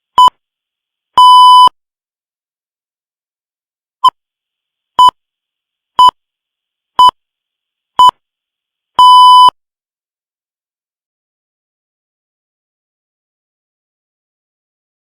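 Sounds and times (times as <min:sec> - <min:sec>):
short steady-tone beeps: 0:01.2 - 0:01.7, 0:09.0 - 0:09.6.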